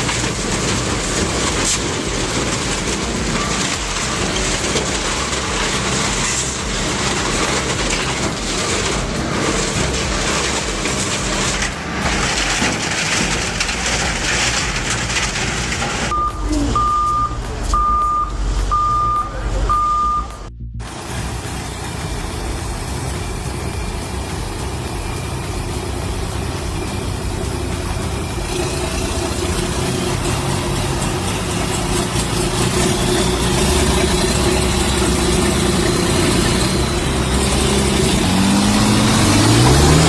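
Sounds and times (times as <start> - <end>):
heavy machinery running: 0.0 - 40.0
reversing alarm beeps: 16.1 - 20.5.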